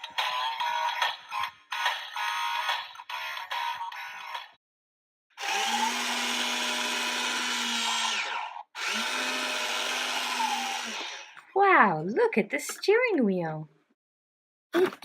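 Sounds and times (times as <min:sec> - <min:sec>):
toy motor whirring: 0:05.4 - 0:11.4.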